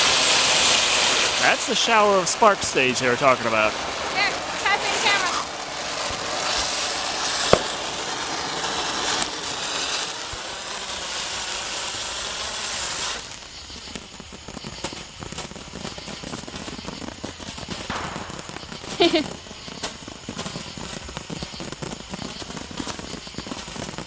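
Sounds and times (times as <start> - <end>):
sparkler firework hissing: 0.0 - 24.0
crackling and small pops: 1.2 - 24.0
sharp pop: 7.5 - 8.1, 17.9 - 20.5.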